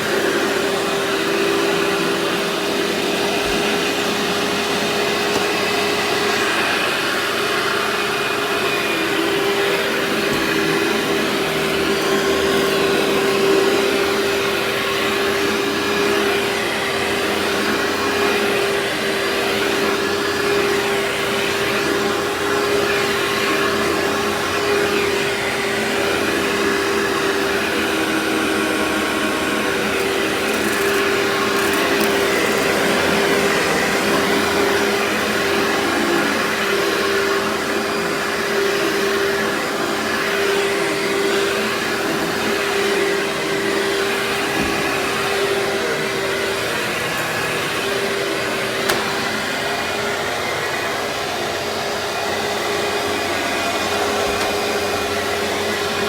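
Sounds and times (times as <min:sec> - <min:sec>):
vacuum cleaner running: 0:00.0 - 0:56.0.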